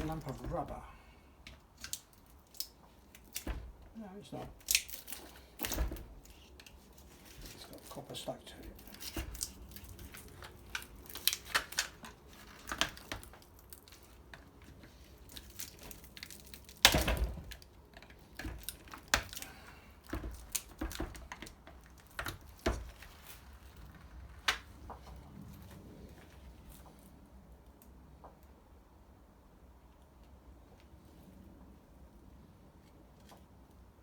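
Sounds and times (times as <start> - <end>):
clicks scrapes and tearing: 1.7 - 3.5, 4.6 - 8.0, 8.6 - 24.7.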